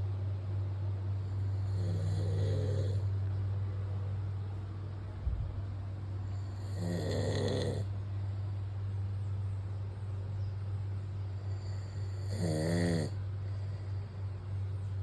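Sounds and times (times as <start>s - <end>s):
steady low hum: 0.0s - 15.0s
man snoring: 1.6s - 3.1s, 6.4s - 7.9s, 11.5s - 13.2s.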